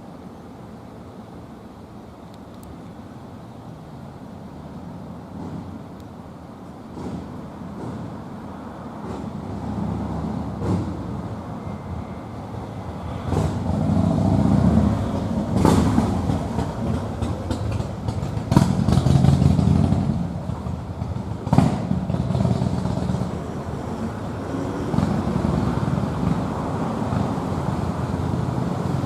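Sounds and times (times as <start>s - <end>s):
low outdoor rumble: 13.1s - 29.0s.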